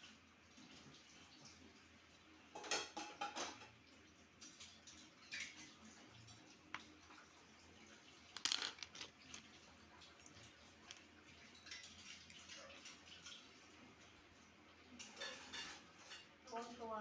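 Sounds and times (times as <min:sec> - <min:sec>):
metal objects clinking: 0:08.3 - 0:09.6, 0:10.2 - 0:12.2.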